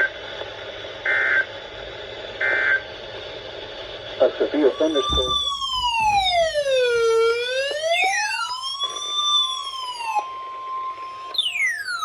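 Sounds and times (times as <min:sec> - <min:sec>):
electronic siren wailing: 0:04.6 - 0:12.0
steady siren tone: 0:04.6 - 0:12.0.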